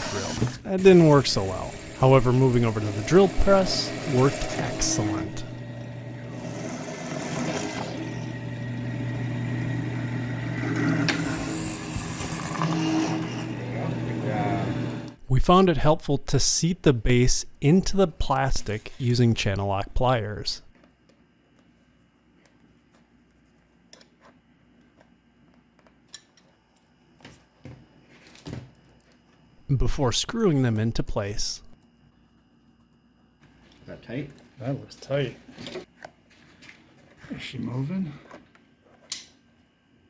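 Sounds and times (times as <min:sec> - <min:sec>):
drill bit whining: 0:00.0 - 0:15.2
drill press motor humming: 0:00.0 - 0:15.2.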